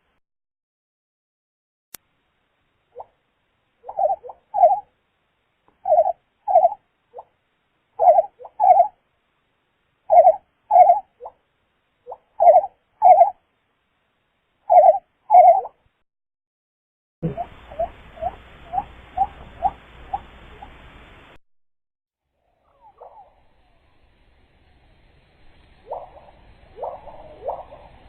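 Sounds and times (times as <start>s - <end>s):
quail calls: 3.8s - 4.9s, 5.8s - 7.3s, 8.0s - 9.0s, 10.1s - 11.4s, 12.0s - 13.4s, 14.7s - 15.8s, 17.2s - 20.8s, 22.6s - 23.3s, 25.9s - 28.0s.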